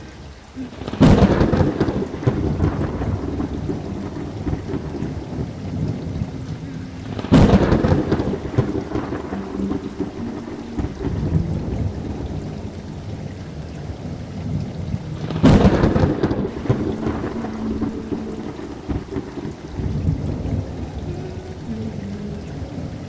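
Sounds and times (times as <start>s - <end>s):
steady rain: 0.0s - 23.0s
thunderclaps rolling: 0.7s - 22.9s.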